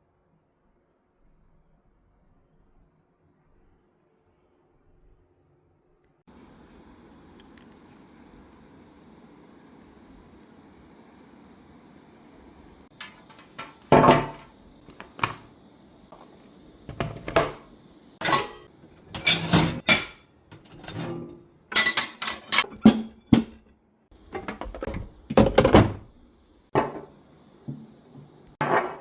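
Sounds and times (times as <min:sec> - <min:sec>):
dishes knocking and clattering: 0:13.0 - 0:14.5, 0:16.9 - 0:17.6, 0:18.2 - 0:23.6, 0:24.3 - 0:26.1, 0:26.7 - 0:27.9.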